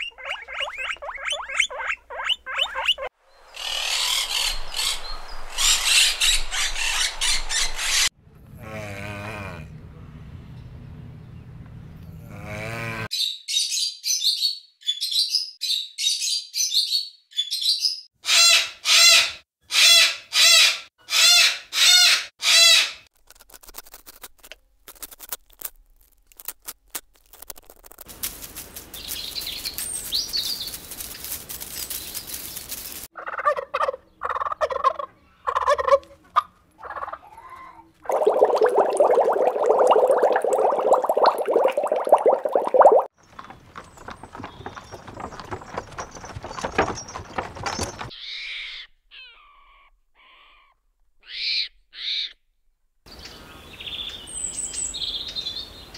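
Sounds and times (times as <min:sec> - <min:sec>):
birds calling: 0:00.0 - 0:08.1, 0:38.1 - 0:52.4
high bird chirps: 0:00.0 - 0:08.1.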